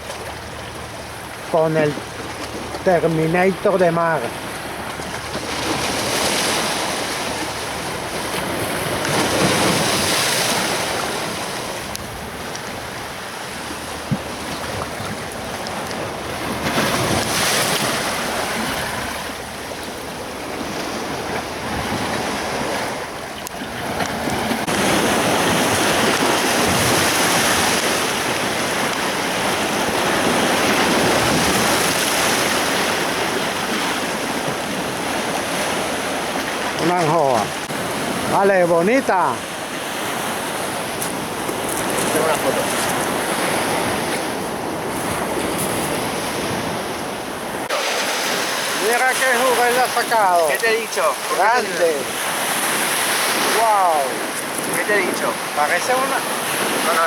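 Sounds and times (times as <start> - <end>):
sea surf washing on beach: 0.0 - 57.0
wind buffeting microphone: 4.4 - 36.8.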